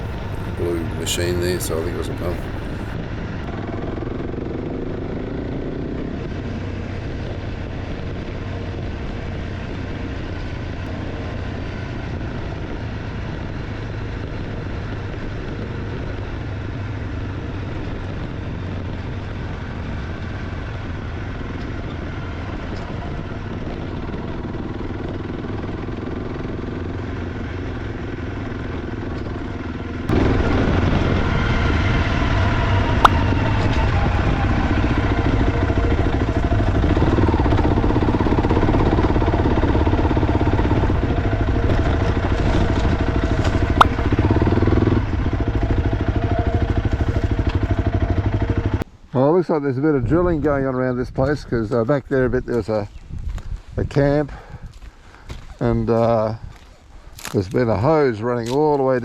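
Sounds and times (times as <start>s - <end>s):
motorcycle engine running: 23.9s - 48.8s.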